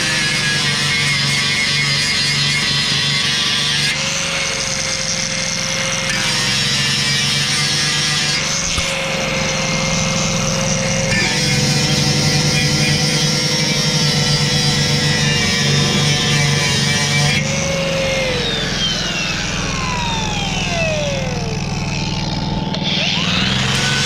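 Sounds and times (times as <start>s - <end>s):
power tool motor whining: 0.0s - 24.0s
low machine hum: 15.4s - 23.0s.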